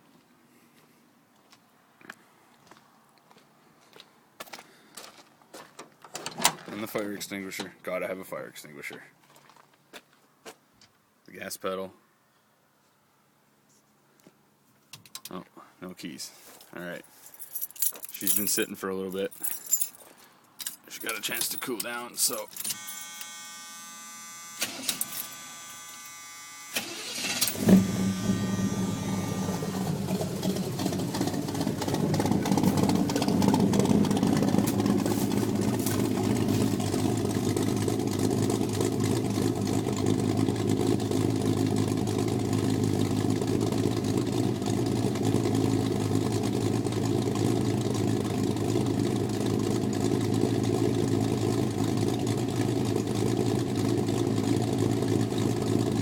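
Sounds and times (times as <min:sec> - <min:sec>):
truck engine idling: 0:22.8 - 0:56.0
starter cranking engine: 0:26.7 - 0:56.0.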